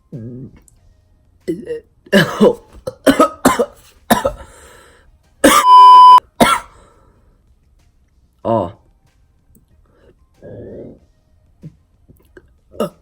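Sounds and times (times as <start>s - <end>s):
boy coughing and clearing throat: 1.5s - 4.5s, 5.4s - 5.8s, 6.4s - 6.8s
loud electronic beep: 5.5s - 6.2s.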